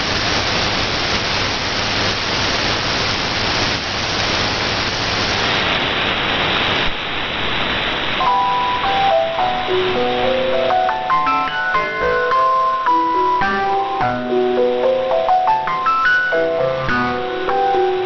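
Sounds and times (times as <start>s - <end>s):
shortwave radio static hiss: 0.0s - 18.0s
chiming glockenspiel-like melody: 8.2s - 18.0s.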